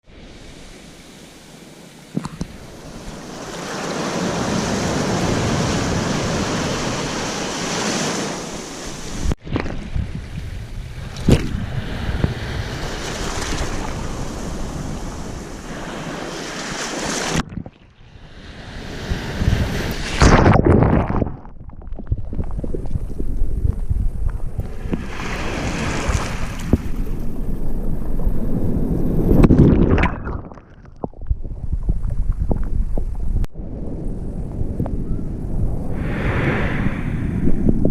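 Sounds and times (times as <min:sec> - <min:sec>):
waves breaking: 0:00.1 - 0:10.0, 0:11.0 - 0:20.6, 0:24.6 - 0:30.7
wind buffeting microphone: 0:08.8 - 0:16.2, 0:17.3 - 0:37.9.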